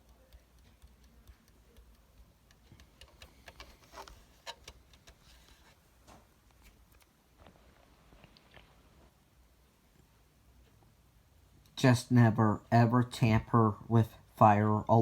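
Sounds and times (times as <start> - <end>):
faint clicks and taps: 0.0 - 9.1, 9.9 - 11.0.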